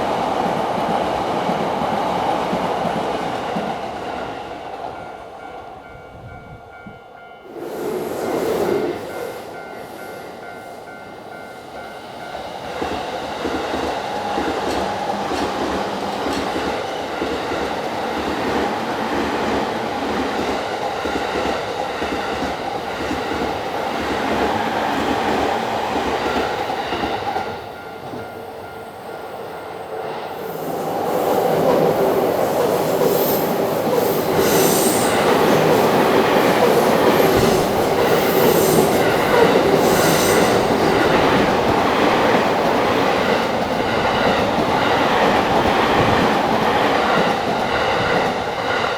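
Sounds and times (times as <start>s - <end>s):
train wheels clattering on rails: 11.1s - 28.4s, 30.6s - 48.9s.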